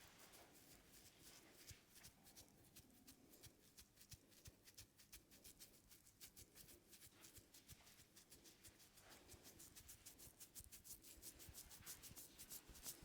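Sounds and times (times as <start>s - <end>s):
fingers rubbing through hair: 6.5s - 13.0s.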